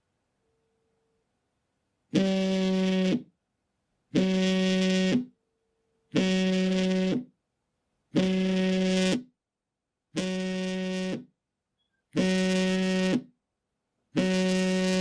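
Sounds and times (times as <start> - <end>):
mobile phone vibrating: 2.2 - 3.4, 4.1 - 5.4, 6.1 - 7.4, 8.1 - 9.4, 10.1 - 11.4, 12.1 - 13.4, 14.1 - 15.0.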